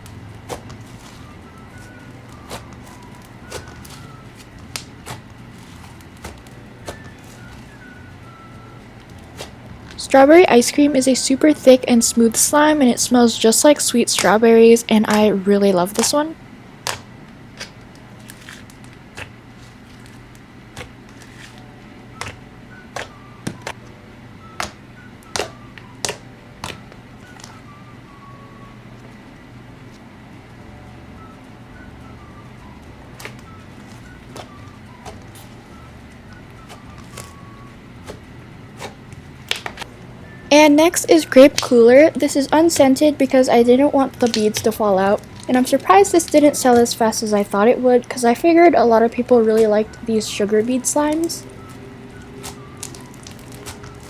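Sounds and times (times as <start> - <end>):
faint background music: 0.0 - 54.0
slime popping and clicking: 24.6 - 26.8.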